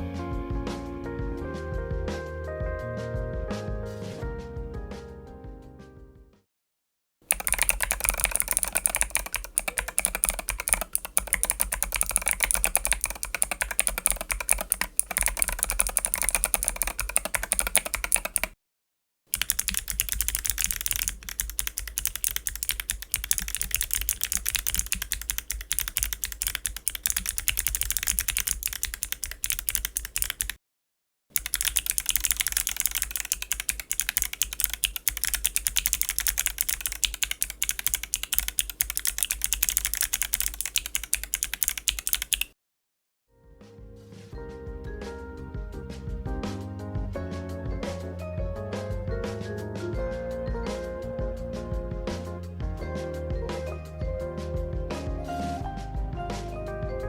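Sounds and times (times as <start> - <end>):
clicky mechanical keyboard typing: 7.3 - 18.6, 19.3 - 30.6, 31.4 - 42.6.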